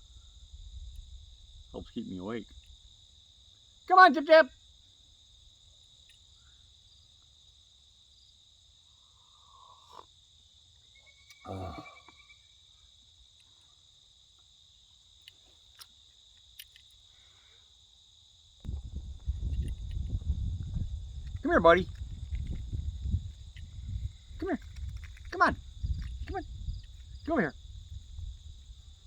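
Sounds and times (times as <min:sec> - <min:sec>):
high-pitched insect chorus: 0:00.0 - 0:29.0
faint clicks: 0:15.2 - 0:17.0.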